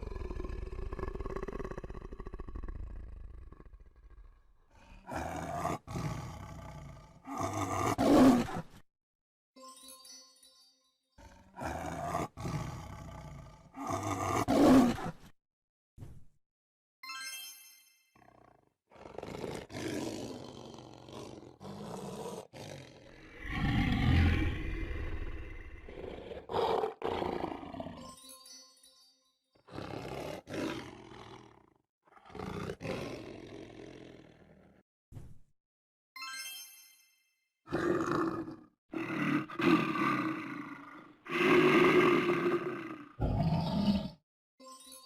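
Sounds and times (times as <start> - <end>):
big cat roaring: 0.0 - 8.6, 11.2 - 15.1, 18.4 - 28.0, 29.7 - 34.8, 37.7 - 44.2
chime-like musical notes: 9.6 - 11.2, 17.0 - 18.2, 28.0 - 29.6, 36.2 - 37.5, 44.6 - 45.0.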